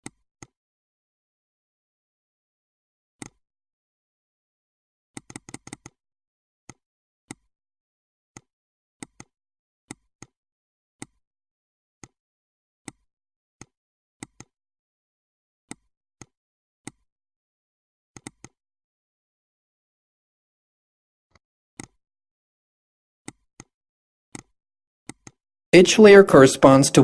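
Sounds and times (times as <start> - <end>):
computer mouse clicking: 3.2 - 3.4, 5.2 - 6.0, 9.0 - 9.3, 14.2 - 14.5, 18.2 - 18.6, 25.1 - 25.4.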